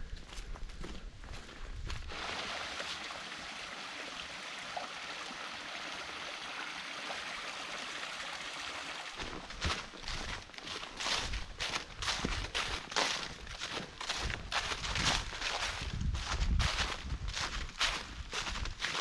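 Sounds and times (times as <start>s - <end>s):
footsteps on a trail: 0.0s - 2.3s, 9.2s - 19.0s
stream running over rocks: 2.1s - 10.2s.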